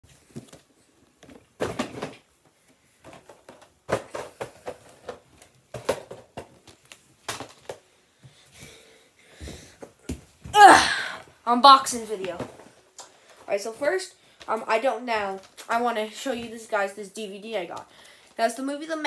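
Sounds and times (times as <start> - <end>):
objects knocking and clicking: 3.0 - 7.8.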